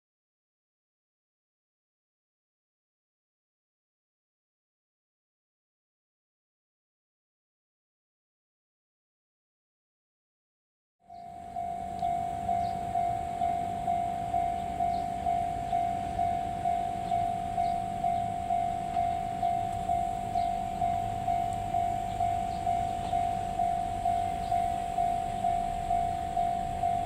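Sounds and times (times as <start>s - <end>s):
level-crossing warning bell: 11.0s - 27.0s.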